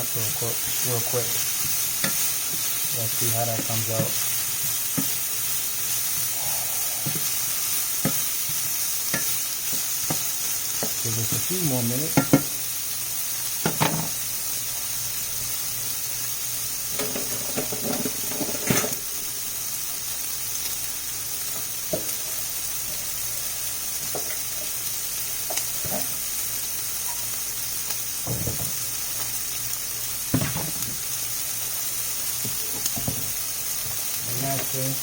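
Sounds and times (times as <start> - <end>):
food sizzling in a frying pan: 0.0 - 35.0
utensil knocking against pan: 12.2 - 12.5.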